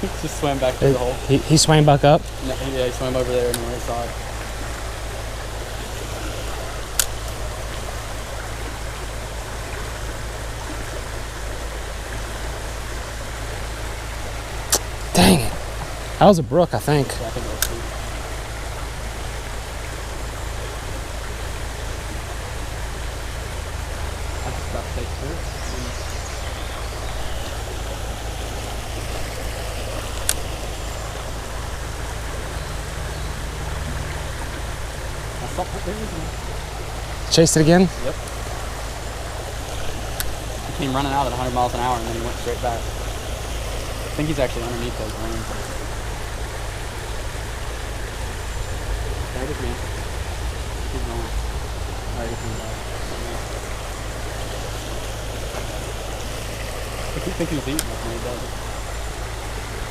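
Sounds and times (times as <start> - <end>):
creek running: 0.0 - 59.9
low rumble: 0.0 - 59.9
sharp click: 6.9 - 7.4.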